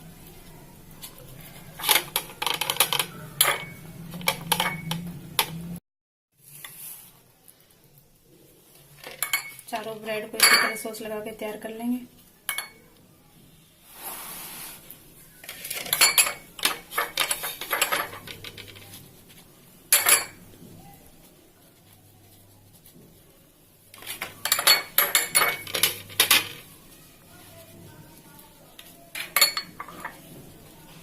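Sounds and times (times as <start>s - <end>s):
cutlery scraping a plate: 15.4s - 19.0s, 24.0s - 26.7s, 29.2s - 30.2s.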